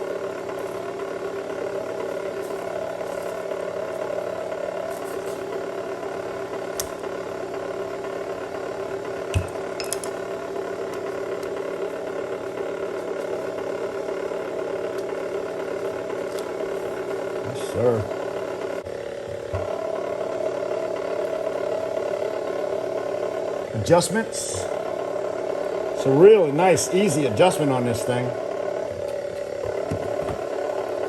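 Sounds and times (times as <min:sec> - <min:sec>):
wire stripping machine whirring: 0:00.0 - 0:31.0.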